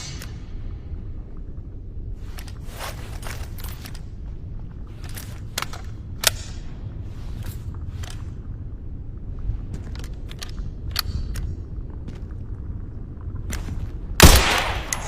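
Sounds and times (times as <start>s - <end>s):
steady low rumble: 0.0s - 15.0s
suppressed rifle shots: 14.2s - 15.0s.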